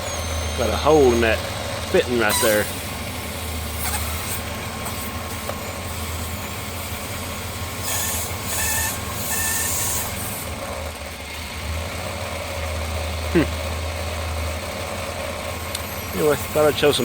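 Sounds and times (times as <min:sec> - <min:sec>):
car engine idling: 0:00.0 - 0:17.0
vacuum leak hissing and whistling: 0:02.3 - 0:10.5.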